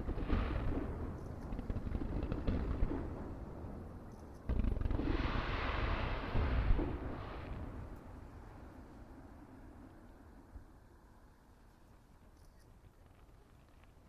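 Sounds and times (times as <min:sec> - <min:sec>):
firework booms: 0:00.0 - 0:03.9, 0:04.5 - 0:08.4
hissing crackle: 0:04.2 - 0:09.0.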